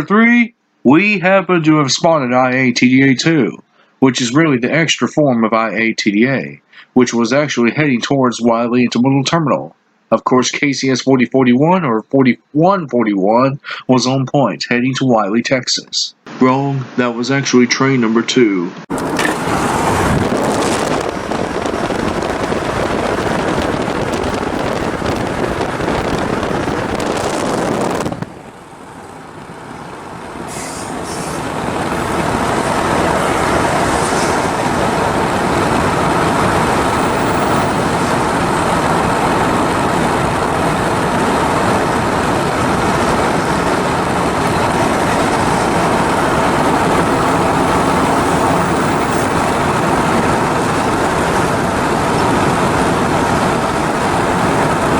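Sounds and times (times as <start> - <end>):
freight train wheels rumbling on rail: 18.9 - 54.9.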